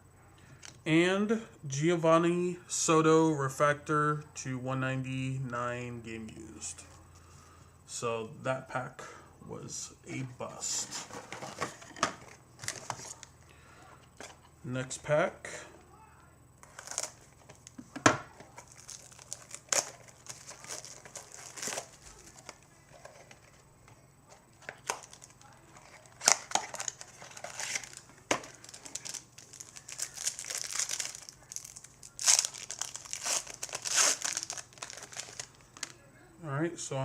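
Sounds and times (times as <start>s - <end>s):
wrapper tearing and crumpling: 16.6s - 17.2s, 18.5s - 23.2s, 24.8s - 36.0s.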